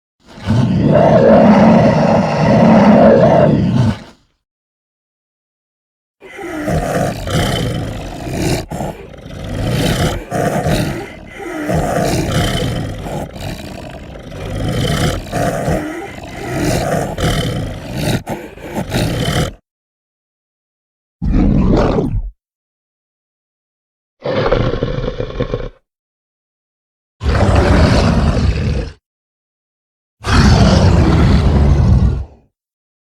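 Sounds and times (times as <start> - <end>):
deep growls and roars: 0.2 - 4.2, 6.2 - 19.6, 21.2 - 22.3, 24.2 - 25.8, 27.2 - 29.0, 30.2 - 32.5.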